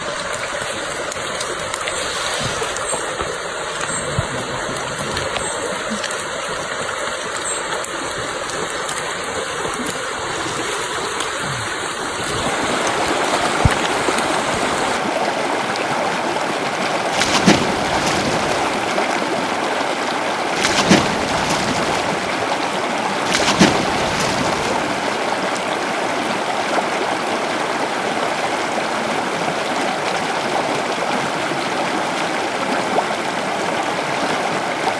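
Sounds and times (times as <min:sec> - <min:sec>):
water splashes: 0:00.0 - 0:27.2
stream water rushing: 0:00.0 - 0:34.9.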